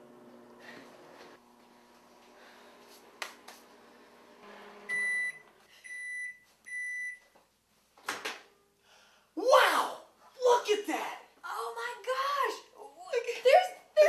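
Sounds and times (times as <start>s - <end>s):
microwave oven humming: 0.0s - 5.6s
microwave beeps: 4.7s - 7.2s.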